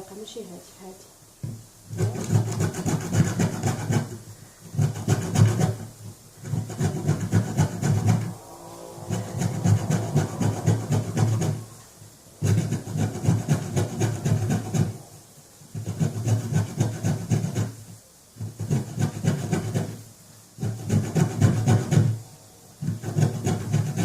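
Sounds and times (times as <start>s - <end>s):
lemon peel rasping on grater: 1.9s - 8.3s, 15.7s - 17.8s, 18.4s - 20.0s, 20.6s - 22.2s, 22.8s - 24.0s.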